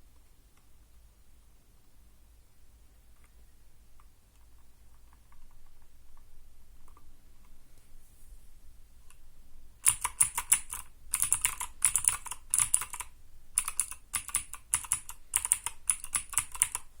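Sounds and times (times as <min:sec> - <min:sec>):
mechanical keyboard keystrokes: 0:09.8 - 0:16.9.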